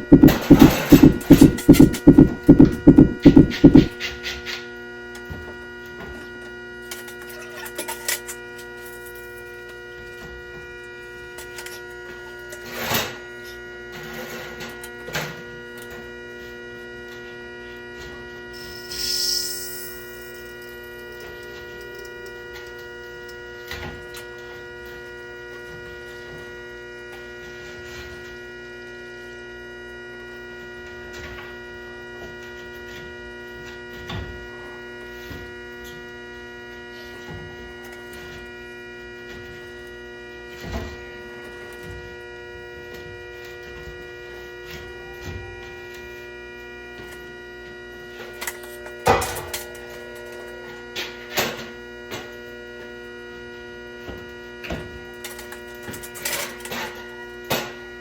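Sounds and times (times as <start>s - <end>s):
knocks: 0.0s - 3.9s
steady electrical hum: 0.0s - 4.2s, 17.7s - 25.8s.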